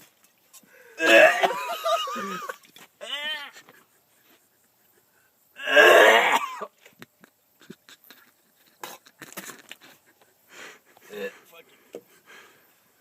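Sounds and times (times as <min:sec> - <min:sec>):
man gagging: 0:01.0 - 0:03.6.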